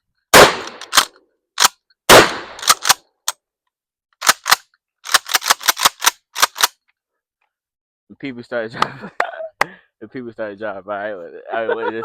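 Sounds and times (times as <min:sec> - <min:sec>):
shotgun firing: 0:00.4 - 0:00.9, 0:02.1 - 0:02.8
sharp clicks and clacks: 0:02.6 - 0:03.4, 0:04.2 - 0:06.8.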